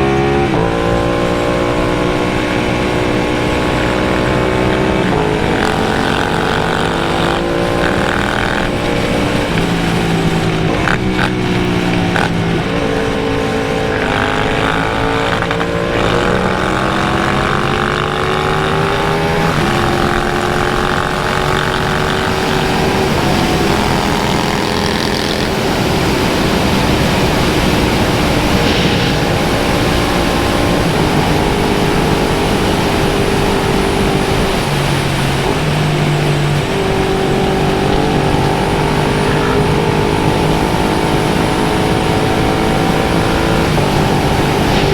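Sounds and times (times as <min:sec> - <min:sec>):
motorcycle engine: 0:00.0 - 0:44.9
rush of noise: 0:00.0 - 0:44.9.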